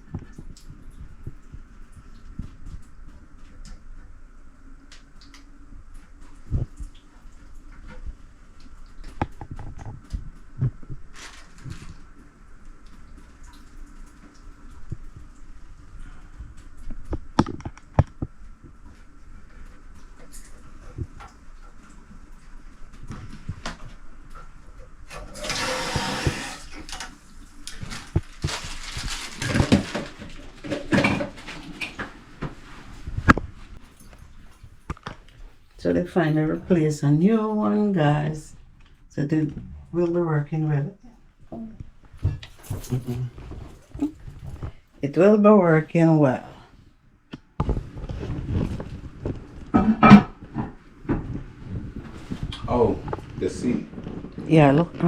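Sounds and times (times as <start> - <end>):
water rushing in toilet tank: 25.0 - 28.5
clunks of parts in toilet tank: 49.8 - 50.8.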